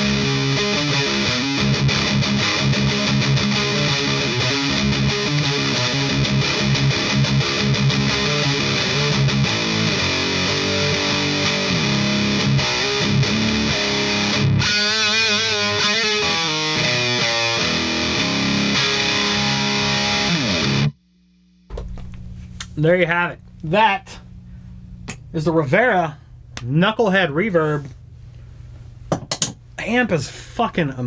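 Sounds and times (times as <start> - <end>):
distorted electric guitar: 0.0 - 21.0.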